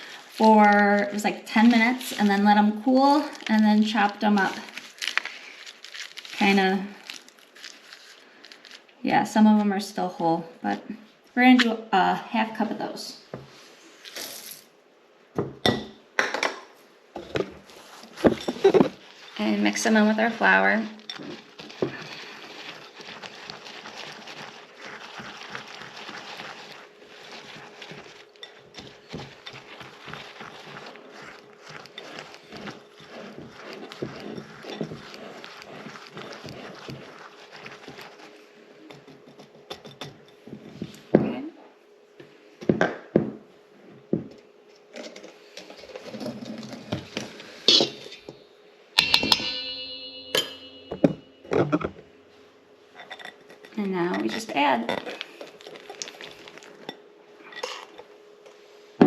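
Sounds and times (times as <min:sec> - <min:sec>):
utensil scraping mixing bowl: 0:17.2 - 0:41.1, 0:49.0 - 0:52.0, 0:53.0 - 0:58.1
sharp clatter with ringing: 0:49.0 - 0:51.8.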